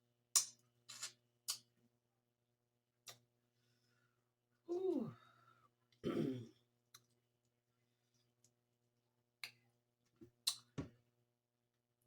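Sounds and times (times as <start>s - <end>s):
mouth smacks from eating: 0.4s - 1.7s
person humming mm: 4.7s - 5.2s.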